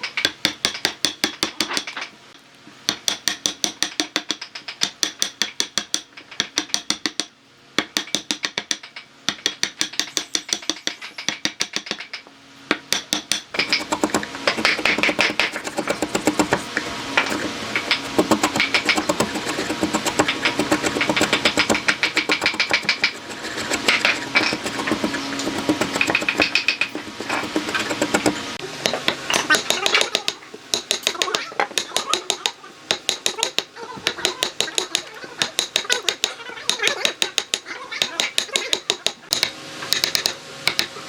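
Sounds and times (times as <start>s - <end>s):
continuous machine sound: 0.0s - 41.0s
quick hammer strikes: 17.2s - 29.8s.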